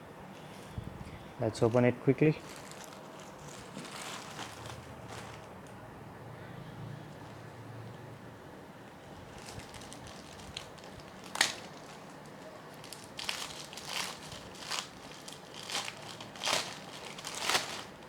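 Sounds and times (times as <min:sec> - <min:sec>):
packaging rustling and crinkling: 0:02.4 - 0:05.6, 0:09.0 - 0:18.0.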